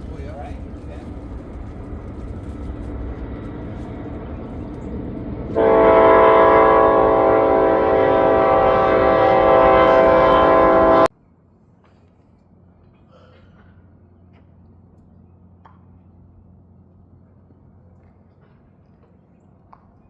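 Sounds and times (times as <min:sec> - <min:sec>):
low rumble: 0:00.0 - 0:11.1
loud horn blast: 0:05.6 - 0:11.1.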